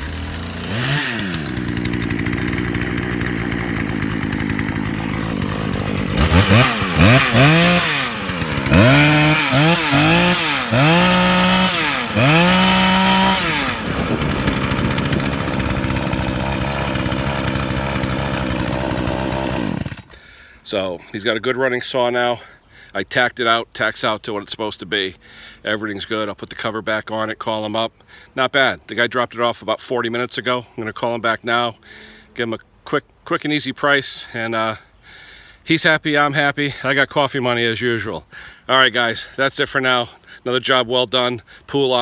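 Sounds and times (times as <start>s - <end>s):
chainsaw idling and revving: 0.0s - 20.3s.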